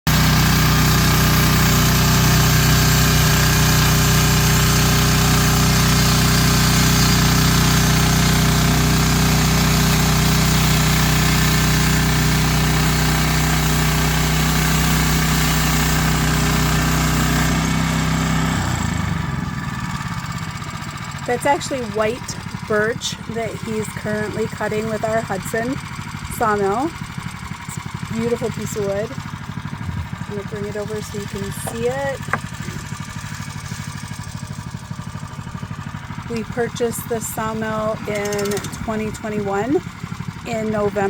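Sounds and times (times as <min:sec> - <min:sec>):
saw blade cutting log: 0:00.1 - 0:19.2, 0:29.8 - 0:34.1, 0:36.3 - 0:39.8
sawmill engine running: 0:00.1 - 0:41.0.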